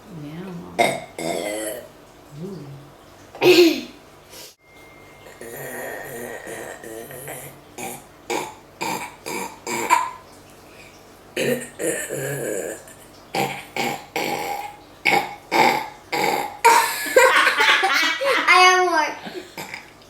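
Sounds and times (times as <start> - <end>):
person burping: 0.8 - 1.9, 5.3 - 10.2, 11.4 - 17.1, 19.3 - 20.0.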